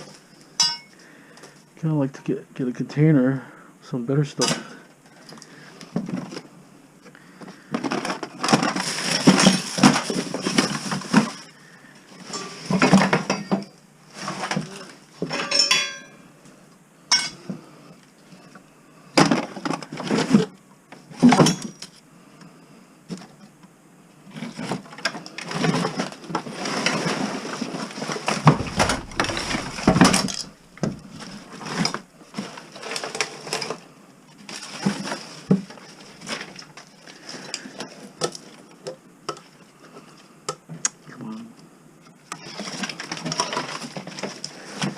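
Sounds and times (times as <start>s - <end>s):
objects clinking and clattering: 15.3s - 16.2s, 28.5s - 32.0s
metal item ringing: 15.5s - 16.2s.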